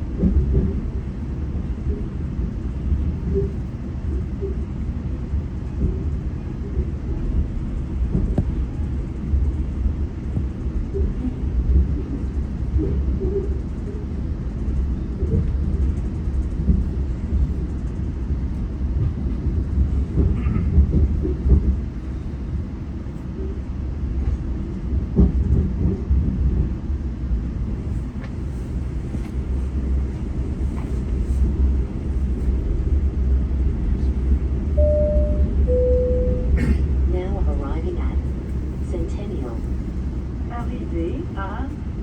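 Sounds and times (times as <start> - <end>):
train knocks and clicks: 0.0 - 41.9
train wheels rumbling on rails: 0.0 - 42.0
two-note falling chime: 34.8 - 36.5.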